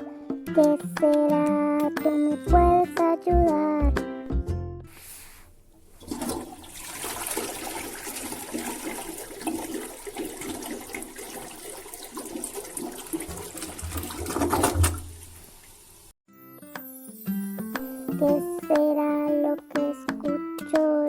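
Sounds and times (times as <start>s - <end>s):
toilet flushing: 5.7s - 16.1s.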